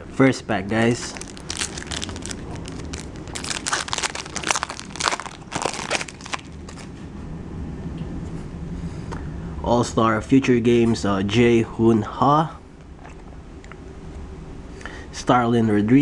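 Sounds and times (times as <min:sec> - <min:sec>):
foil wrapper tearing and crinkling: 0:00.7 - 0:06.9.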